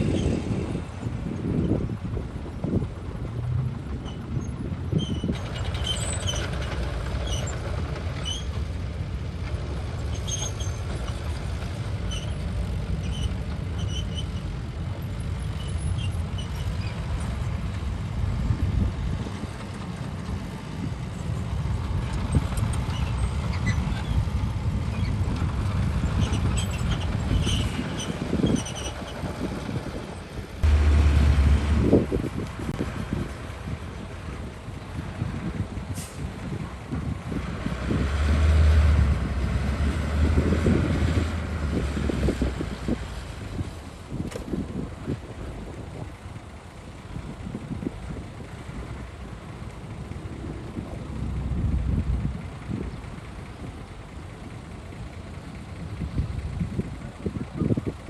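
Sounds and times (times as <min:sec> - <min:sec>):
diesel machinery rumbling: 0:00.0 - 0:58.0
faint high clicks and squeaks: 0:04.0 - 0:08.7, 0:09.5 - 0:17.3, 0:22.1 - 0:29.3.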